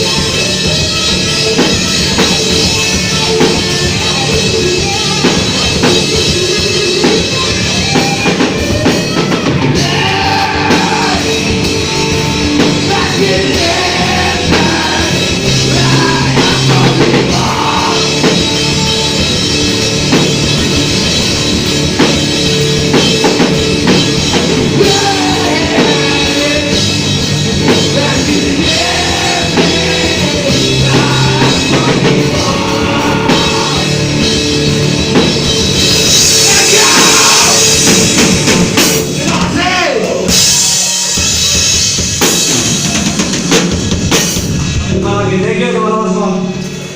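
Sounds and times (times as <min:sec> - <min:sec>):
heavy rock band music: 0:00.0 - 0:46.9
person singing: 0:09.7 - 0:18.5, 0:24.5 - 0:34.3, 0:36.3 - 0:38.2.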